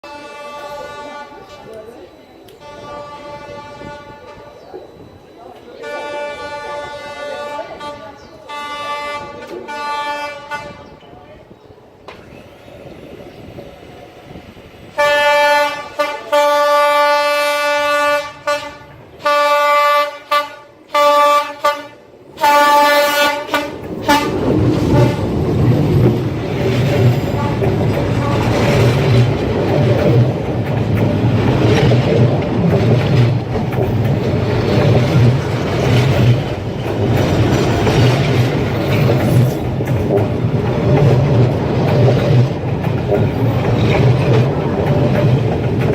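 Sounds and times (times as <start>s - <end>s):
train horn blasts: 0.0s - 5.0s, 5.8s - 11.0s, 14.9s - 25.3s, 27.2s - 29.1s
train rumbling and clattering past: 0.1s - 45.9s.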